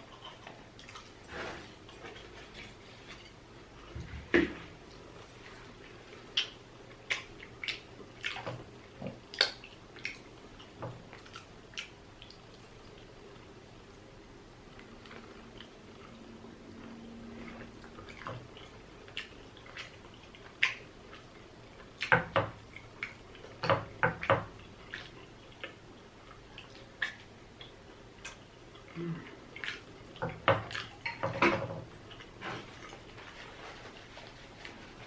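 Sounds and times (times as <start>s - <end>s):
wet chewing and mouth smacking: 0.0s - 3.9s, 4.7s - 8.5s, 24.6s - 31.2s.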